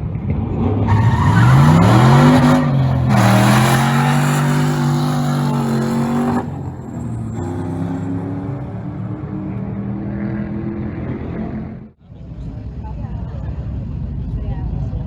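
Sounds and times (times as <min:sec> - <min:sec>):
car engine revving: 0:00.9 - 0:12.0.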